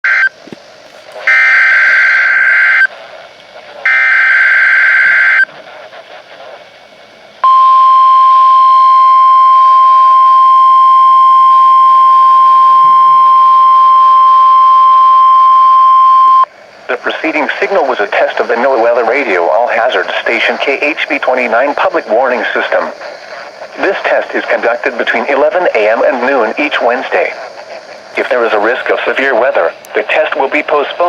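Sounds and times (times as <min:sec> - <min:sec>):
radio hiss: 0:00.1 - 0:07.4, 0:16.4 - 0:31.0
steady warning alarm tone: 0:01.2 - 0:02.9, 0:03.8 - 0:05.5, 0:07.4 - 0:31.0.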